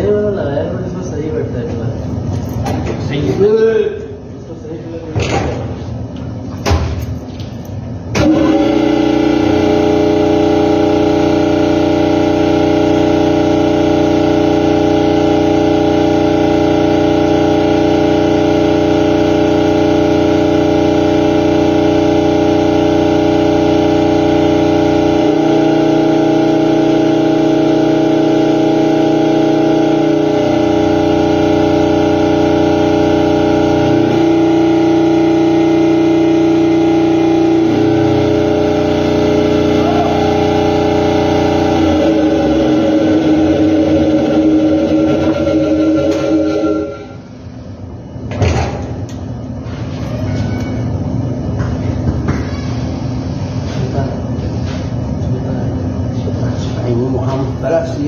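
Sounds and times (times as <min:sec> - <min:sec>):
compressor running with even hum: 0:00.0 - 0:58.0
compressor clicks: 0:06.6 - 0:09.1.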